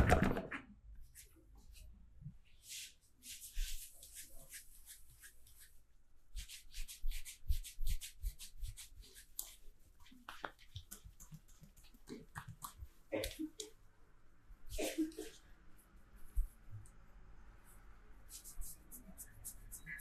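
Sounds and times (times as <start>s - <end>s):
palms rubbing over skin: 2.7s - 5.8s, 6.4s - 13.7s, 18.2s - 20.0s.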